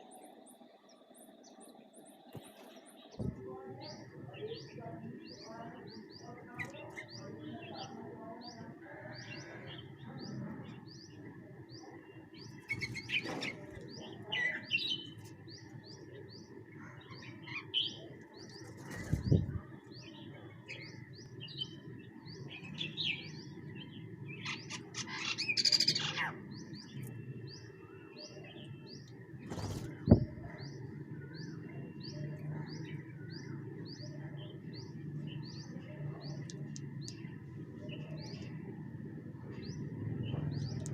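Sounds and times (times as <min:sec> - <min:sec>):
birds chirping: 0:00.0 - 0:40.9
harsh bird calls: 0:11.9 - 0:38.6.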